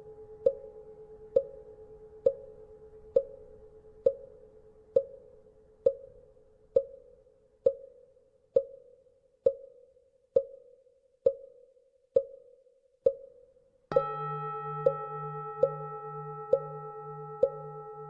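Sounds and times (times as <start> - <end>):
temple bell hum: 13.9 - 18.0.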